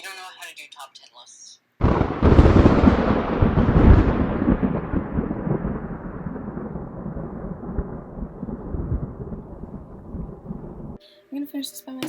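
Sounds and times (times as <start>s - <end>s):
deep rumble: 1.8s - 11.0s.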